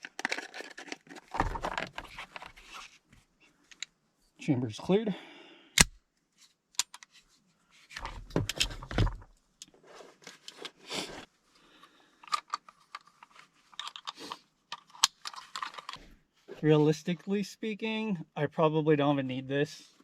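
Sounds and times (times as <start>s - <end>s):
clothing and gear rustling: 6.3s - 11.5s.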